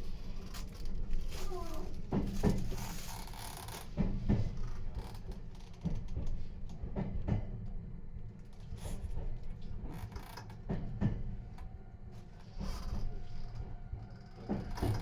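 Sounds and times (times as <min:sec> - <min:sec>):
electric train rumbling: 0:00.0 - 0:15.0.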